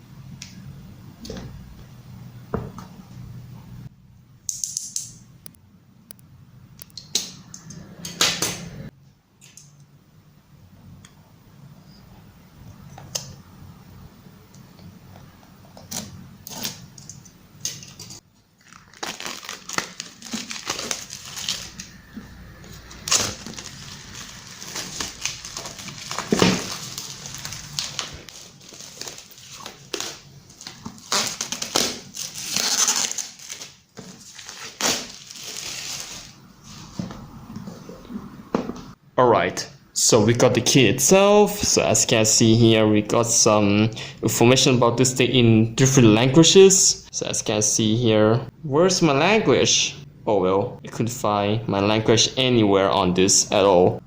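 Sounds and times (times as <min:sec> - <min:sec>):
packaging crinkling and tearing: 0:18.6 - 0:22.1, 0:22.9 - 0:36.4.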